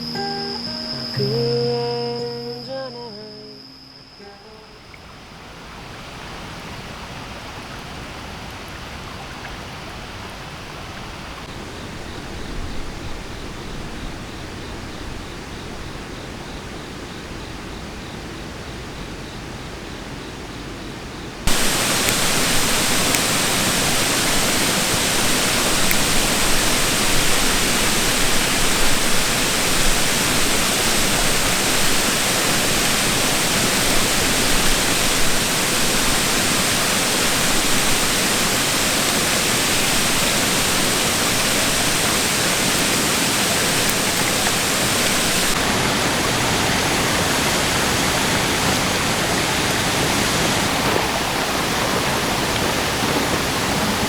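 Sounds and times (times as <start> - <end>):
creek water running: 21.5 - 54.0.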